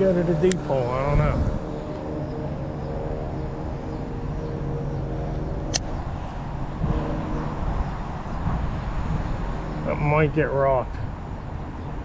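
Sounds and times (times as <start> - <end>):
low engine-like drone: 0.0 - 12.0
sharp click: 5.7 - 6.0.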